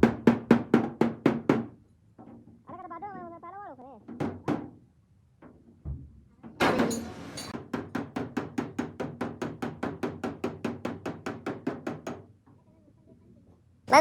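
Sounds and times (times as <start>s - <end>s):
hammer tapping on sheet metal: 0.0s - 1.7s, 6.6s - 12.2s.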